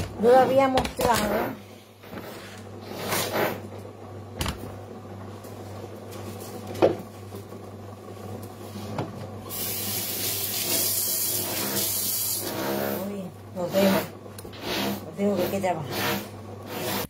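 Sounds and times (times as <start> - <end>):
water running into sink: 9.5 - 13.0.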